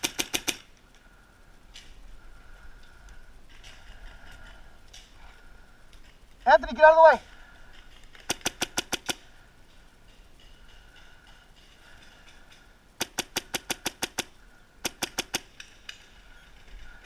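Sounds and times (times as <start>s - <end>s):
paintball marker firing: 0.0s - 0.7s, 8.2s - 9.2s, 13.0s - 15.6s.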